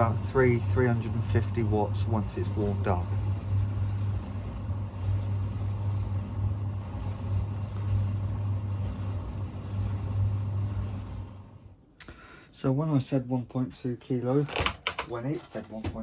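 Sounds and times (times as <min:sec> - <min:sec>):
tumble dryer running: 0:00.0 - 0:11.8.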